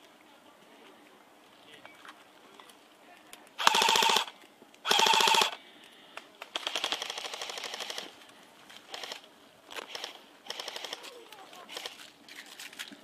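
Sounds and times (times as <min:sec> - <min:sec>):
airsoft rifles firing bursts: 0:03.6 - 0:05.6, 0:06.5 - 0:08.1, 0:09.9 - 0:12.0.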